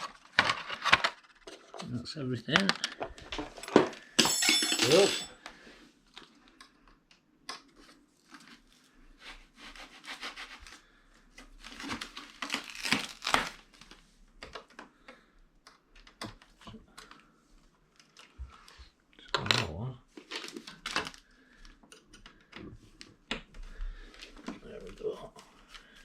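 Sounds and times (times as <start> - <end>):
packaging rustling and scraping: 0.0 - 4.1, 7.8 - 14.0, 20.1 - 21.4.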